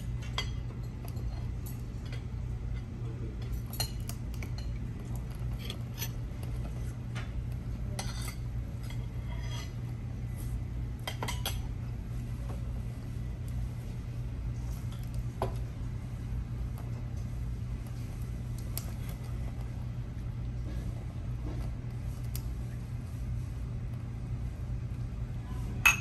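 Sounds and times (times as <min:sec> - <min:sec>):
low hum of dining room: 0:00.0 - 0:26.0
dishes and cutlery clinking: 0:00.2 - 0:06.6, 0:07.9 - 0:09.8, 0:11.0 - 0:11.6, 0:25.8 - 0:26.0.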